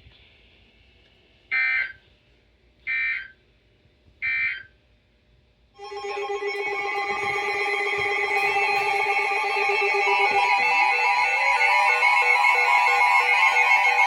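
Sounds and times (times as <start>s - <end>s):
electronic data bursts: 5.8s - 14.0s
steady alert tone: 5.8s - 14.0s.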